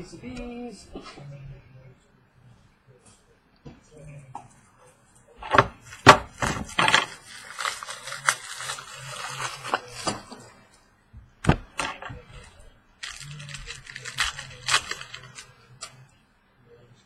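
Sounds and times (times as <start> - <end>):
cardboard rustling and scraping: 11.5 - 15.5.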